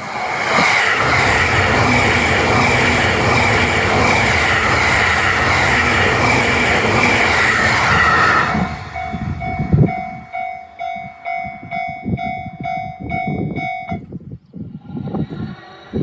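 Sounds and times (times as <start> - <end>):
passing train: 0.0 - 16.0
crossing bell two-tone ding: 8.8 - 14.1.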